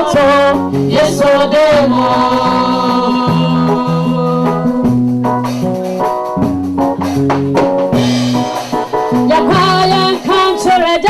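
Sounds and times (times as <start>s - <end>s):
bass line: 0.0s - 10.3s
drums keeping steady beat: 0.0s - 11.0s
sustained chords: 1.8s - 5.4s.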